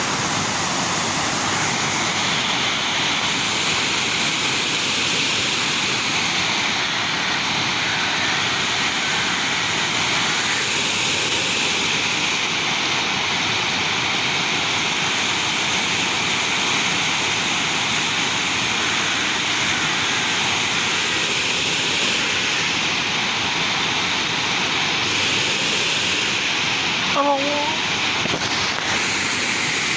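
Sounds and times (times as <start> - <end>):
waterfall rushing roar: 0.0 - 29.9.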